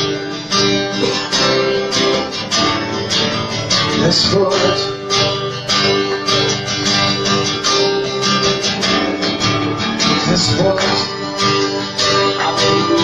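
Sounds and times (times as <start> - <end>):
band chords: 0.0 - 13.0
strummed guitar: 0.0 - 13.0
person singing: 3.9 - 5.0, 10.1 - 13.0.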